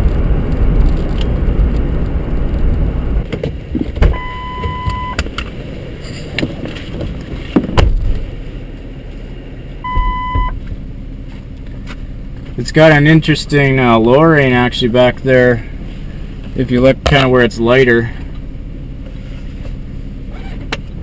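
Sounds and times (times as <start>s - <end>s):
wind rumbling on microphone: 0.0s - 4.2s
knocks and clicks of car entry: 3.2s - 5.5s, 6.3s - 8.2s, 9.9s - 10.7s
electronic beep: 4.2s - 5.2s, 9.8s - 10.6s.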